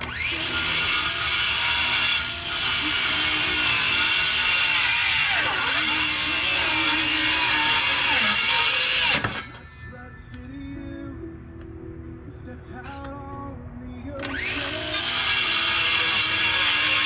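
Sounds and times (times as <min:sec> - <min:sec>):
electric saw cutting wood: 0:00.0 - 0:09.6, 0:14.2 - 0:17.0.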